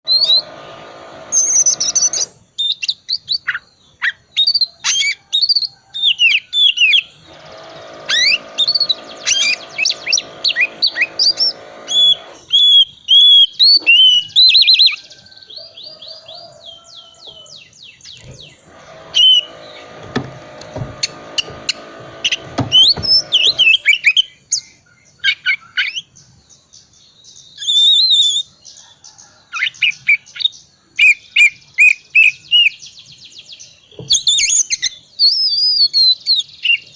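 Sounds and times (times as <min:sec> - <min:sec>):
low harsh buzzing rasp: 0:00.1 - 0:02.4, 0:07.1 - 0:12.7, 0:18.2 - 0:24.0
bird singing varied whistles: 0:27.6 - 0:28.5, 0:34.1 - 0:36.9.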